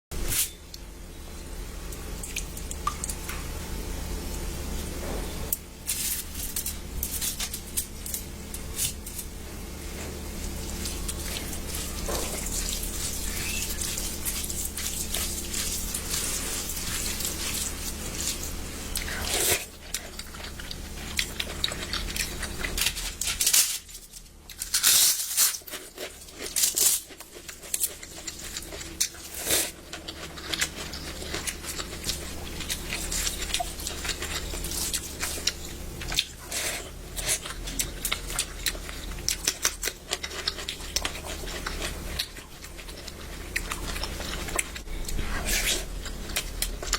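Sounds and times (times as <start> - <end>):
food being torn and chewed: 5.6 - 46.9.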